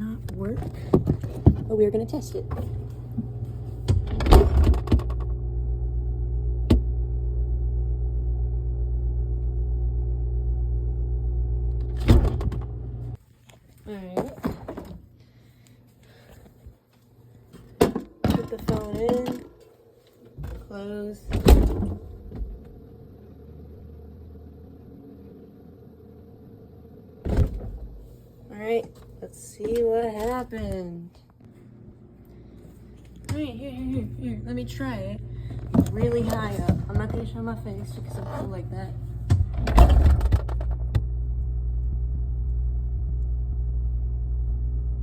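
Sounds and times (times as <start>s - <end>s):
refrigerator humming: 0.0s - 13.2s, 13.9s - 45.0s
fridge door pulled open: 2.4s - 5.4s, 11.8s - 12.8s, 21.3s - 22.7s.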